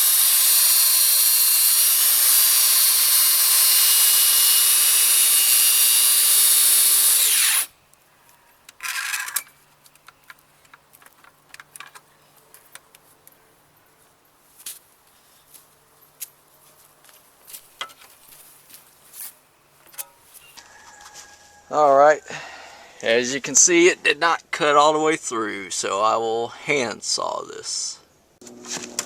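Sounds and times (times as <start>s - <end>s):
track saw cutting wood: 0.0s - 7.7s
handling clicks and knocks: 8.6s - 13.4s.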